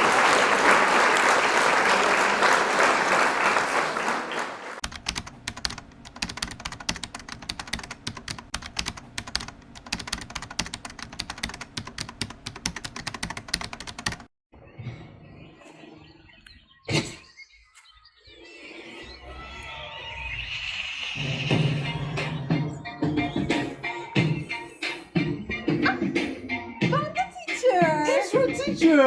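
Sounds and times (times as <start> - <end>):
applause: 0.0 - 4.8
computer keyboard typing: 4.8 - 14.3.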